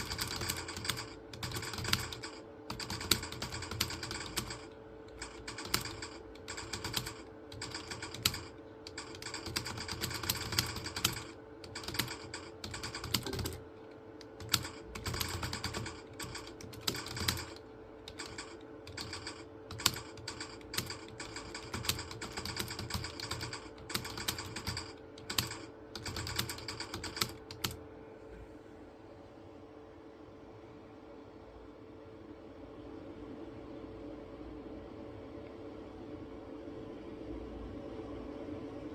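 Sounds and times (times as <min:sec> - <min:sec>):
computer keyboard typing: 0:00.0 - 0:27.8
faint steady hum: 0:00.0 - 0:38.9.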